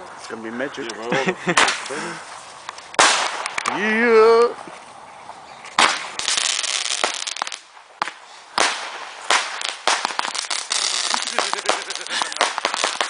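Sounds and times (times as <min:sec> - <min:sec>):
firework sharp pops: 0:01.5 - 0:02.0, 0:02.6 - 0:03.8, 0:05.7 - 0:13.0
firework hissing fizz: 0:05.8 - 0:13.0.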